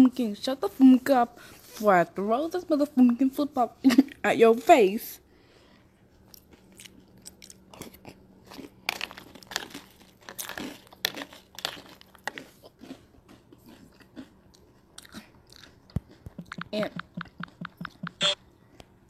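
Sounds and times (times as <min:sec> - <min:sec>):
faint steady hum: 0:00.0 - 0:19.0
crunching and crackling: 0:06.2 - 0:18.1.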